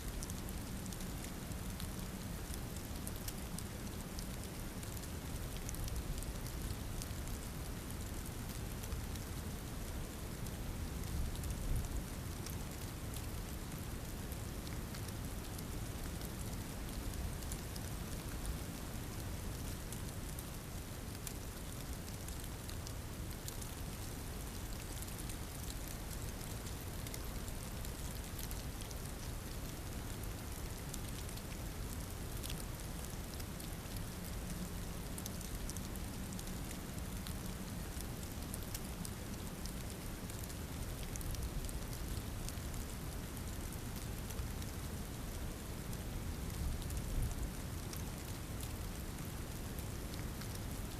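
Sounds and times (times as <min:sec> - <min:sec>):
rain or sleet pattering: 0:00.0 - 0:50.9.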